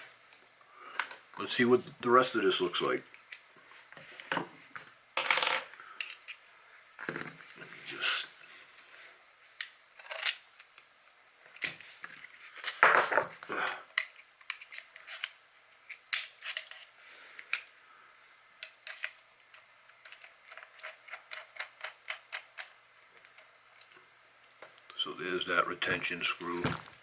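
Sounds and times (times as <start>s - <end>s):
small metal clicks and knocks: 18.6s - 24.0s.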